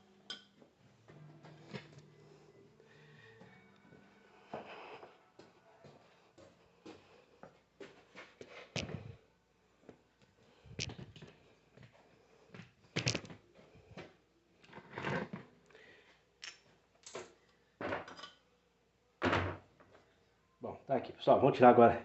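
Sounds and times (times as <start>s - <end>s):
metal parts knocking and scraping: 13.0s - 13.3s.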